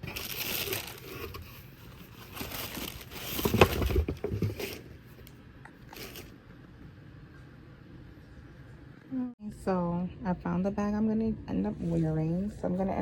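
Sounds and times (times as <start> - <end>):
rustling and crinkling: 0.0 - 6.4.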